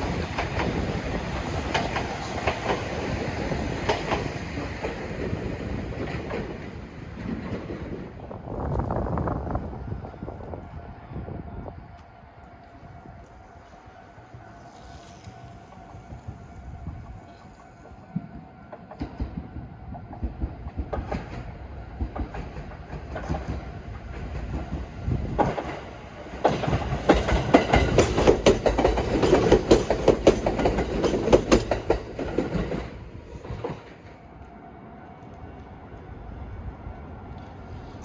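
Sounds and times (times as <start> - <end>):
train wheels clattering over rail joints: 0.0 - 8.0, 18.1 - 34.2.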